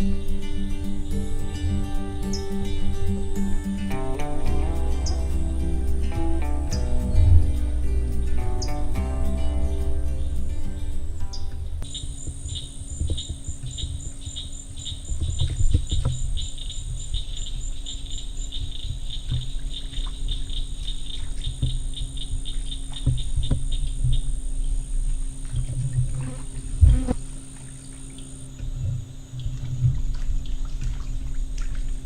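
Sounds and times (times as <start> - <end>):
steady high drone: 0.0 - 15.1
crickets chirping: 0.0 - 32.0
low rumble: 0.0 - 32.0.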